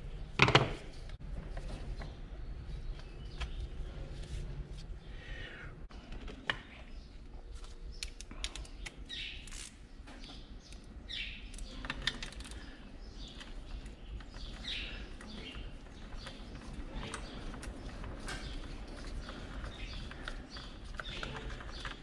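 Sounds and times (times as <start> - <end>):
bird chirping: 7.9 - 22.0.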